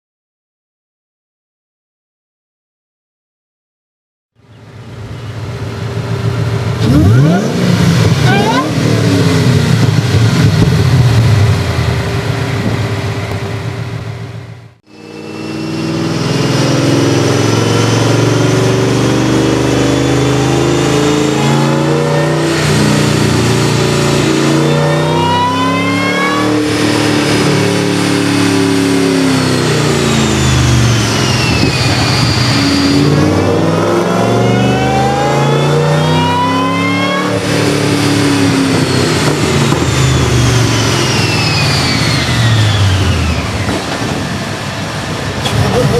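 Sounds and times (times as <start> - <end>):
supercharger whine: 4.4 - 45.9
car engine revving: 4.8 - 45.9.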